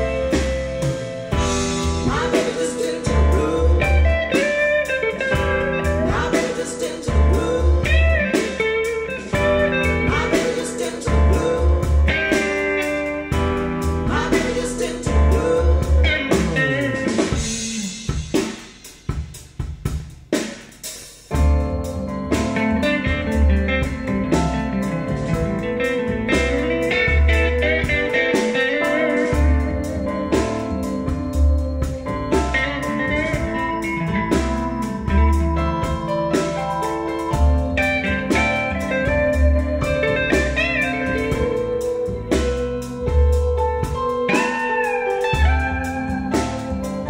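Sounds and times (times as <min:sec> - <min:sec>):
slide guitar: 0:00.0 - 0:18.0, 0:21.4 - 0:47.0
blues-rock band music: 0:00.0 - 0:47.0.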